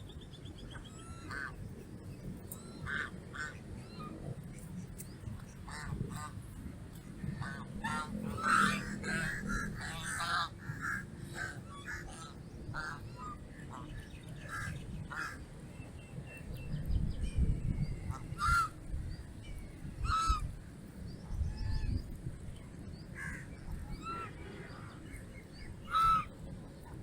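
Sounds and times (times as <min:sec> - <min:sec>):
geese honking: 0:07.4 - 0:13.9, 0:25.8 - 0:26.4.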